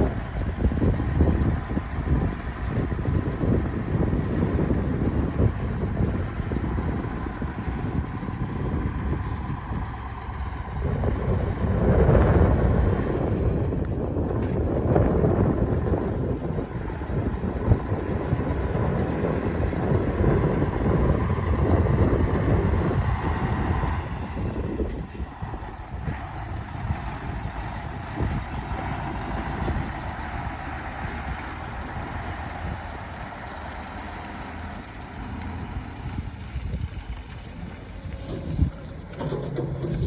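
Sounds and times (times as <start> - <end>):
excavator diesel engine running: 0.0 - 40.0.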